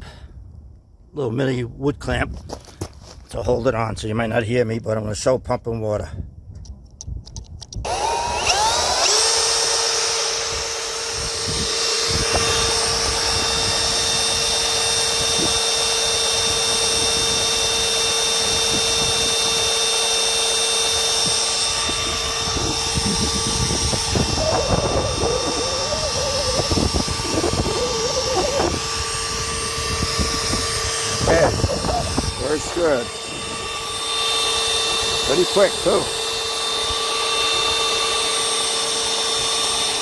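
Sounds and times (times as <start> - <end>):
drill motor whining: 7.8 - 40.0
wavering sound: 20.2 - 35.6.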